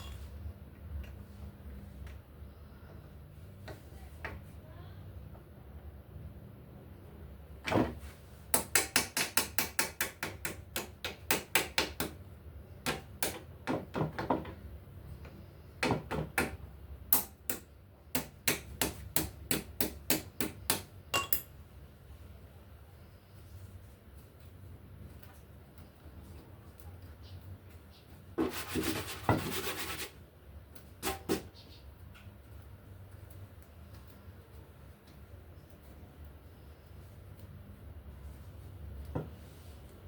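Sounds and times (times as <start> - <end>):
hammer tapping on metal: 8.5 - 12.2, 15.8 - 21.5.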